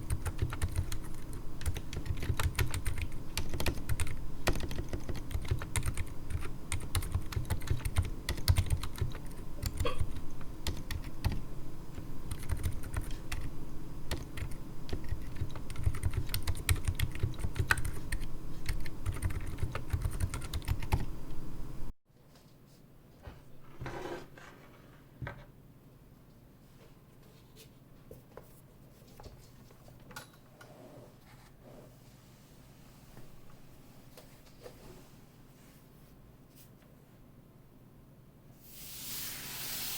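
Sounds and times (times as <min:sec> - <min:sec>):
muted keyboard typing: 0:00.0 - 0:11.4, 0:12.0 - 0:13.5, 0:14.1 - 0:21.1.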